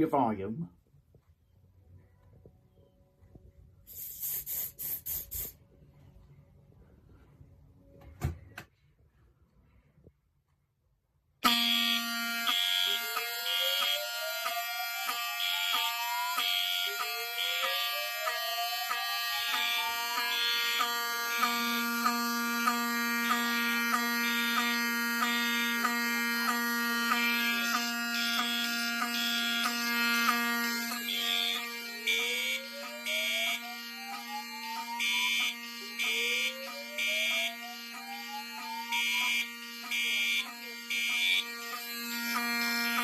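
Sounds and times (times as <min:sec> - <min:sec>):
continuous fire alarm horn: 0:11.4 - 0:43.0
pulsing fire alarm horn: 0:11.4 - 0:43.0.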